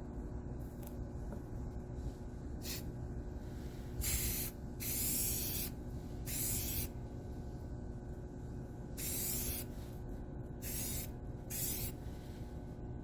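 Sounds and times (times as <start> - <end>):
steady low hum: 0.0 - 13.0
aerosol spray can hissing: 4.0 - 5.7, 6.3 - 6.9, 9.0 - 9.6, 10.6 - 12.0.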